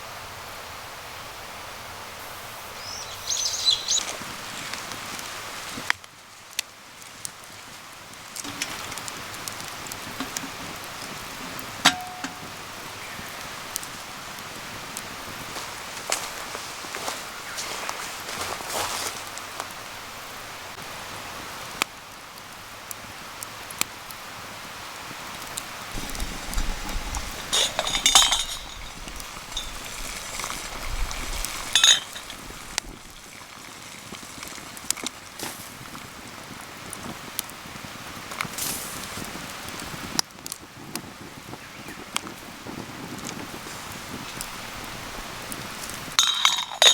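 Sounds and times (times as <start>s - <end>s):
outdoor hiss: 0.0s - 46.9s
wood fire crackling: 2.8s - 17.2s, 19.0s - 46.9s
metal cookware clinking: 8.5s - 9.1s, 10.0s - 10.8s, 11.4s - 12.7s, 26.0s - 32.8s, 46.2s - 46.9s
sharp metallic clink: 11.9s - 12.6s, 26.0s - 30.0s.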